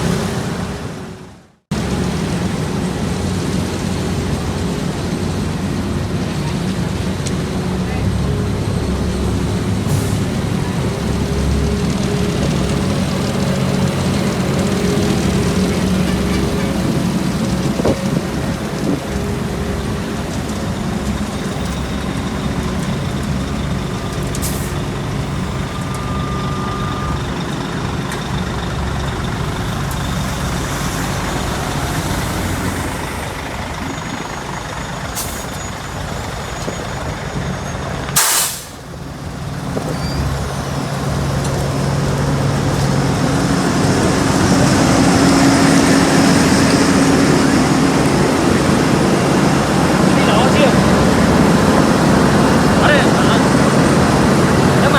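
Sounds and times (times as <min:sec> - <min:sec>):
heavy diesel machinery running: 0:00.0 - 0:54.9
air brakes hissing: 0:09.8 - 0:10.5, 0:24.3 - 0:27.4, 0:29.6 - 0:39.0.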